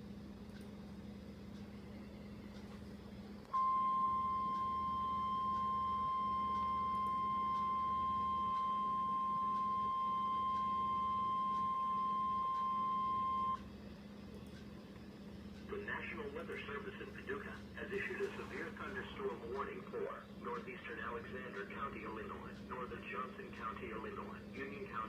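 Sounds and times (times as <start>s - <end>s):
faint radio hum and hiss: 0.1s - 25.0s
steady alarm beep: 3.5s - 13.6s.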